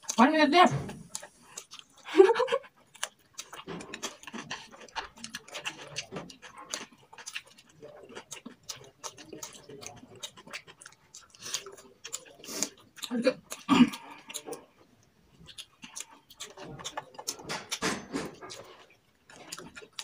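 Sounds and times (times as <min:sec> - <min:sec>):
chewing and mouth noises: 0:00.0 - 0:00.3, 0:00.9 - 0:20.0
chopsticks clattering on plates: 0:16.9 - 0:18.7.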